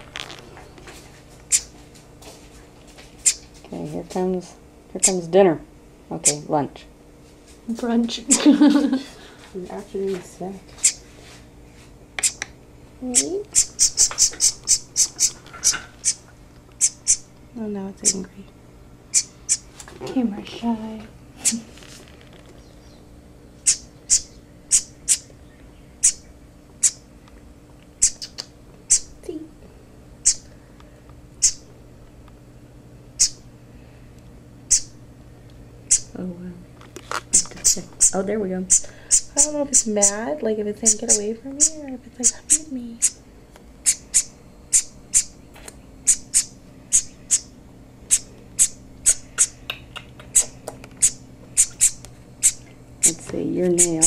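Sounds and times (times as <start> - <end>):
faint low hum: 0.0 - 54.0
baby bird chirping shrilly: 1.5 - 1.7, 3.2 - 3.4, 5.0 - 5.2, 6.2 - 6.5, 10.8 - 11.0, 12.2 - 12.4, 13.1 - 16.2, 16.8 - 17.3, 19.1 - 19.7, 23.6 - 25.3, 26.0 - 27.0, 28.0 - 29.2, 30.2 - 30.5, 31.4 - 31.7, 33.2 - 33.4, 34.7 - 35.0, 35.9 - 36.1, 37.3 - 40.2, 40.8 - 43.2, 43.8 - 45.4, 46.0 - 47.5, 48.1 - 49.6, 50.3 - 54.0.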